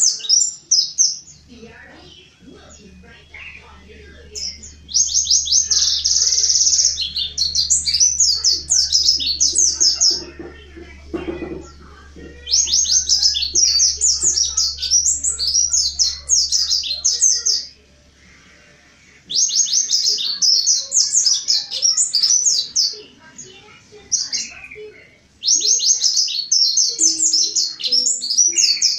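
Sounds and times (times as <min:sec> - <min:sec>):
bird singing high chattering notes: 0:00.0 - 0:18.5, 0:19.2 - 0:28.9.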